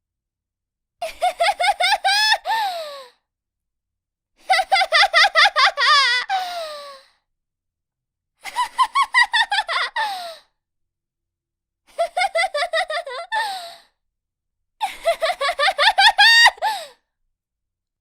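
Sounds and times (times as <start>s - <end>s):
young woman giggling: 12.0s - 13.7s, 14.8s - 16.8s.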